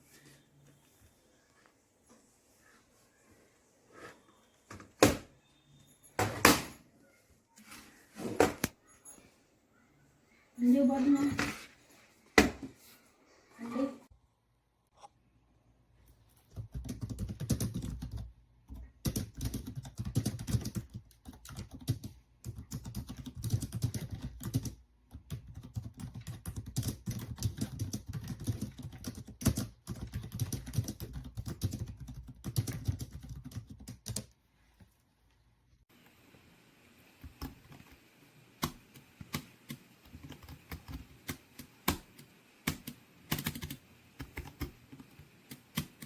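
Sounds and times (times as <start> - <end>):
fast typing on keyboard: 16.4 - 34.3, 38.6 - 46.0.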